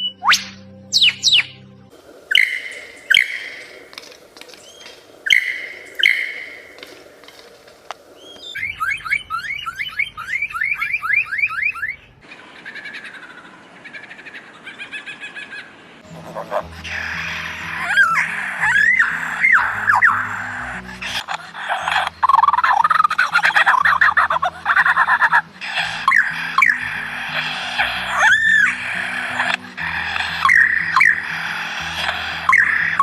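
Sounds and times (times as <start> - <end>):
person whistling bird calls: 0.0 - 1.6, 2.4 - 3.6, 16.9 - 21.2, 26.0 - 33.0.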